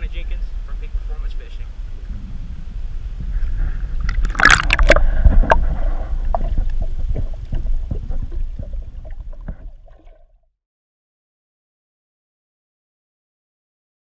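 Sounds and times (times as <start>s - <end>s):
low rumble of boat: 0.0s - 10.5s
knocks and splashes: 4.1s - 10.4s.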